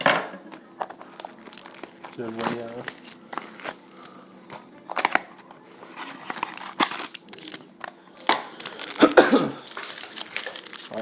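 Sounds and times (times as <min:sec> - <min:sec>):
card pack wrapper crinkling and tearing: 0:00.9 - 0:04.1, 0:06.0 - 0:11.0.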